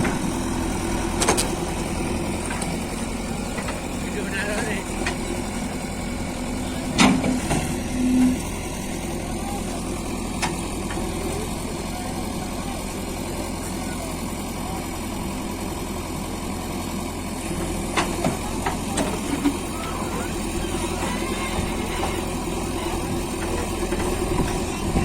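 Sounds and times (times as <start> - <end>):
diesel engine running: 0.0 - 25.0
short steady tone: 7.8 - 8.6.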